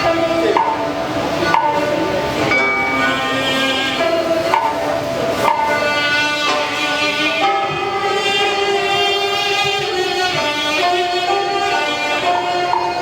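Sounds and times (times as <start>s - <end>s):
sharp percussion knocks: 0.0s - 13.0s
traditional ensemble melody: 0.0s - 13.0s.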